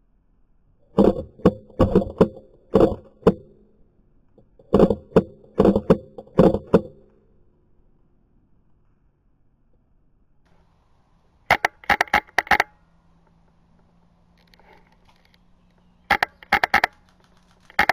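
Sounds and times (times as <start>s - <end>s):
ringing of gun body: 11.5s - 12.7s.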